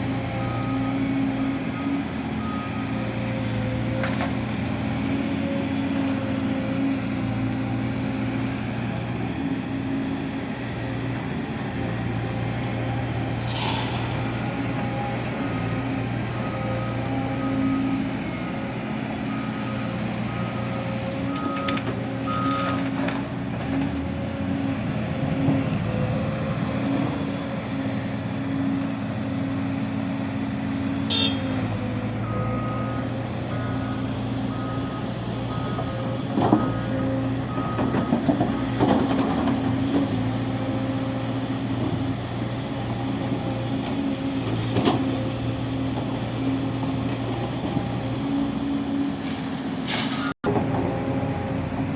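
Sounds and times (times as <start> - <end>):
diesel construction vehicle running: 0.0 - 51.9
reversing alarm beeping: 14.5 - 22.9, 32.1 - 38.8.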